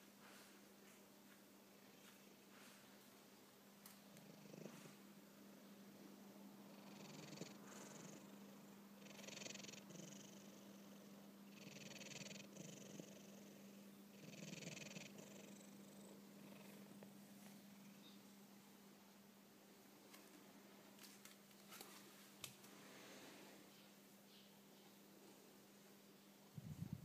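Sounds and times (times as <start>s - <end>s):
cat snoring softly: 4.2s - 5.0s, 6.7s - 17.0s.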